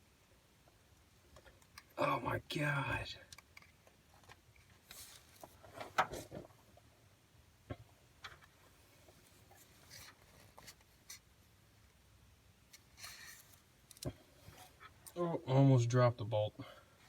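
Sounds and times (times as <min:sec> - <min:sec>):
faint clicks and scraping by hands: 0:03.2 - 0:06.9, 0:07.7 - 0:12.0, 0:12.6 - 0:15.2.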